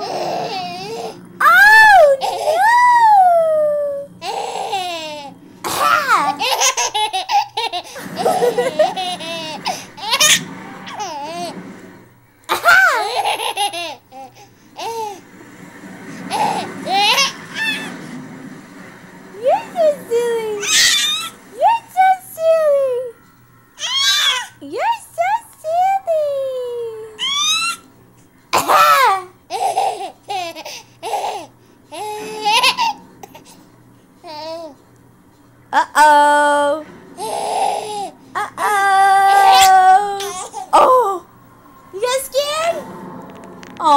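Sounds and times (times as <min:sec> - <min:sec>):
baby laughing: 0:00.0 - 0:11.5, 0:12.5 - 0:15.2, 0:16.3 - 0:17.9, 0:19.4 - 0:23.1, 0:28.6 - 0:33.5, 0:37.2 - 0:41.2.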